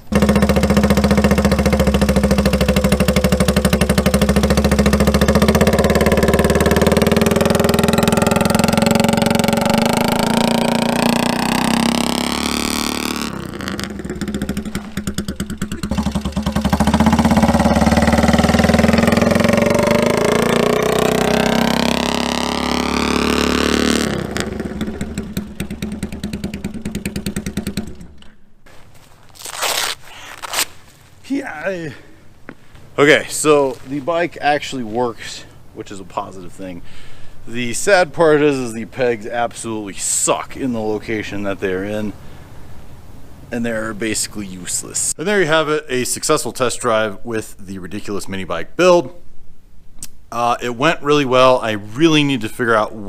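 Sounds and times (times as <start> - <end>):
small gasoline engine running: 0.1 - 28.1.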